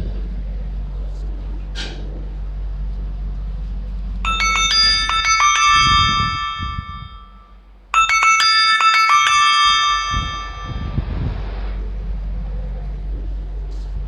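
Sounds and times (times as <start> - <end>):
low steady hum: 0.0 - 14.0
phone ringtone chime notes: 4.3 - 7.3, 8.0 - 11.2.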